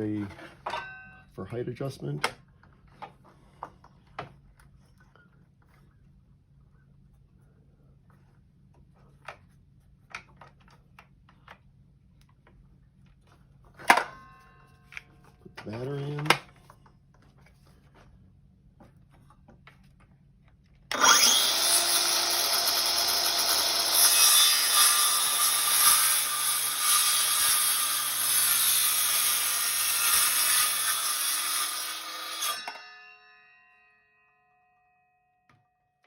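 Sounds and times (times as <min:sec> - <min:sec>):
saw blade winding down: 0:20.9 - 0:32.9
circular saw cutting wood: 0:20.9 - 0:33.0.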